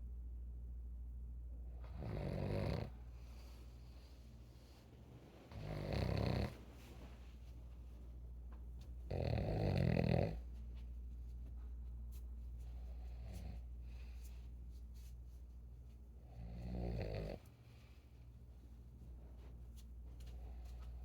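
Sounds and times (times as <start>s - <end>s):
person snoring: 5.6s - 6.5s.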